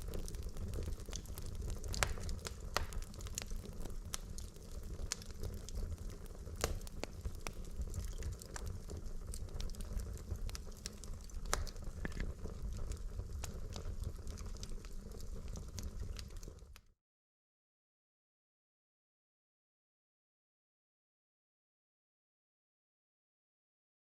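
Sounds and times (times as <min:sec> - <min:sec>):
burning logs crackling and popping: 0:00.0 - 0:16.9
low rumble of flame: 0:00.0 - 0:16.9.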